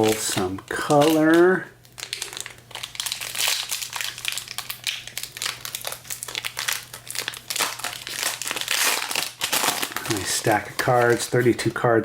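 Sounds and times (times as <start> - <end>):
wrapper crinkling: 0.0 - 11.7.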